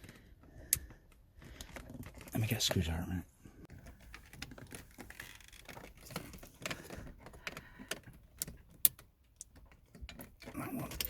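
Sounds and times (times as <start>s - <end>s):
hand tools and plastic parts clicking: 3.8s - 11.0s.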